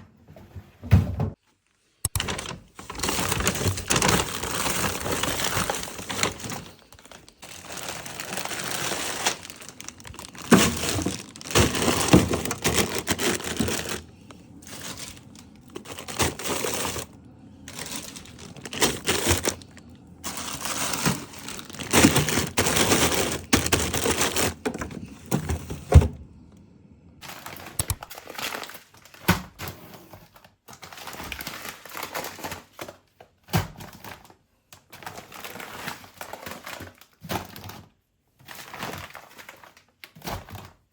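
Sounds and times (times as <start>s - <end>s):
packaging crinkling and rustling: 2.1s - 26.2s, 27.2s - 29.3s, 30.2s - 33.2s, 33.8s - 37.9s
items set down knocking: 9.4s - 17.1s, 17.7s - 26.2s.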